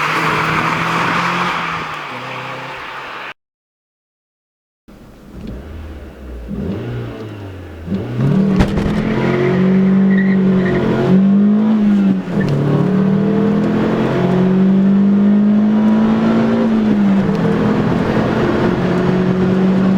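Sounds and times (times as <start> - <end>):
car engine revving: 5.0 - 19.9.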